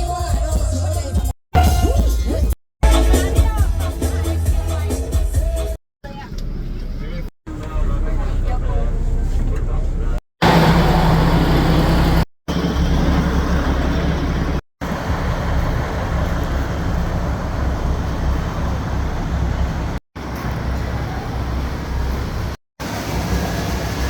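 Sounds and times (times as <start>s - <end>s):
vehicle engine rumbling: 0.2s - 24.0s
road and wind noise: 6.1s - 24.0s.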